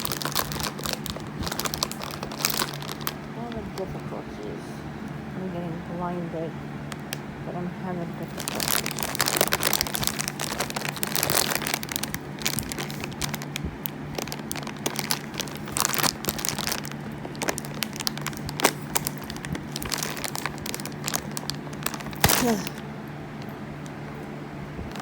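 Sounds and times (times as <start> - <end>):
wrapper crinkling: 0.0 - 4.1, 8.2 - 22.8
steady low hum: 0.0 - 25.0.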